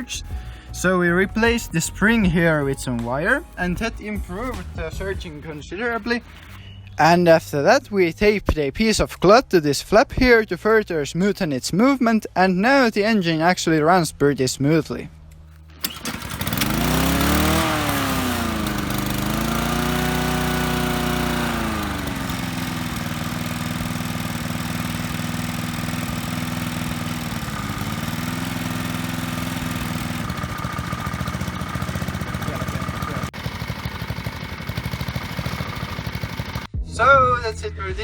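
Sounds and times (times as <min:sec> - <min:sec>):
lawn mower engine running: 0:00.0 - 0:07.2, 0:15.6 - 0:36.8.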